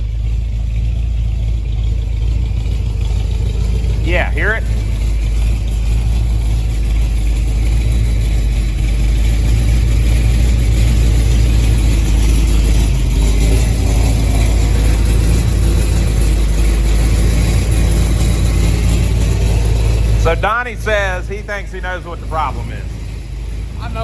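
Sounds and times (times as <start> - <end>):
fast metallic rattle: 0.0 - 24.0
truck engine idling: 0.0 - 24.0.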